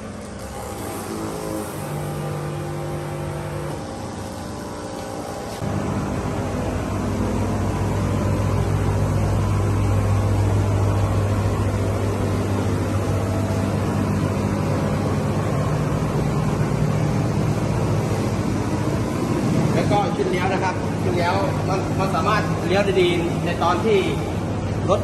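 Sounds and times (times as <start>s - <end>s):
electric motor humming: 0.0s - 19.8s.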